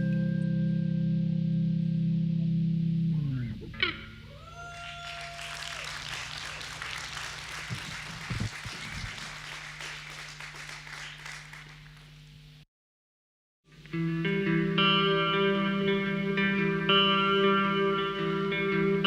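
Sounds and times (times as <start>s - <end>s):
low amplifier hum: 0.0s - 12.6s
audience applauding: 4.5s - 12.2s.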